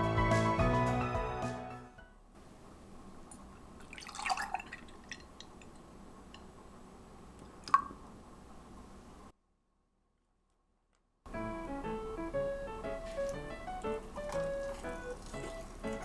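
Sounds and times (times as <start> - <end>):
dishes clinking: 12.2 - 16.0.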